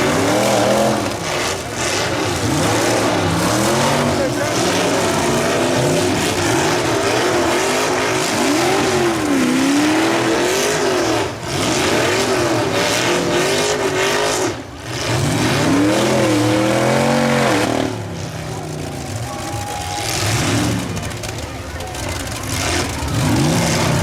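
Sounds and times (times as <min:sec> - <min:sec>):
car engines revving hard: 0:00.0 - 0:24.0.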